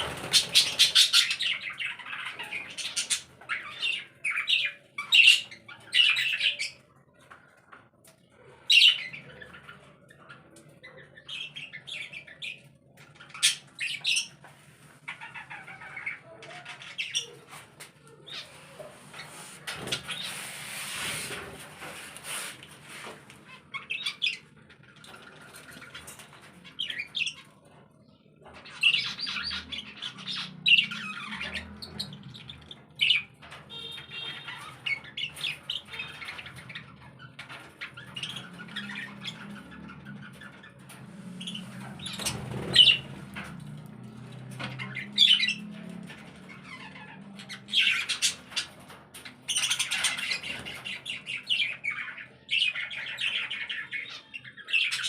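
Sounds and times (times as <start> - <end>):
birds squawking and chirping: 0.0 - 55.0.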